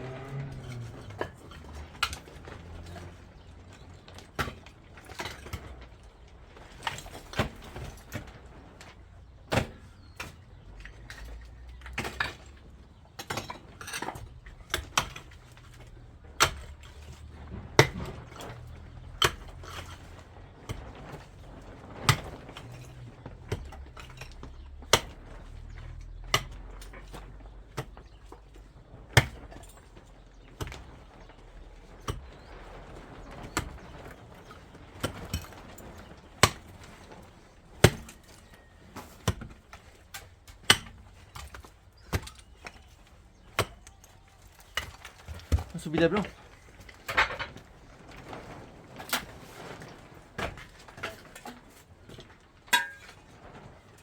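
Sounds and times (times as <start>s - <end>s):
hand tools clinking and knocking: 33.3s - 48.2s, 50.4s - 53.3s.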